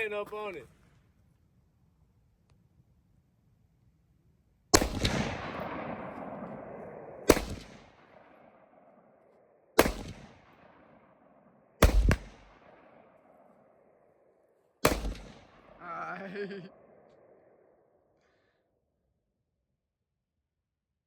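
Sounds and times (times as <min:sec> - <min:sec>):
gunshots: 0:04.7 - 0:08.9, 0:09.8 - 0:11.2, 0:11.8 - 0:13.5, 0:14.8 - 0:17.4
gunshot echo: 0:04.7 - 0:09.0, 0:09.8 - 0:13.6, 0:14.8 - 0:17.5.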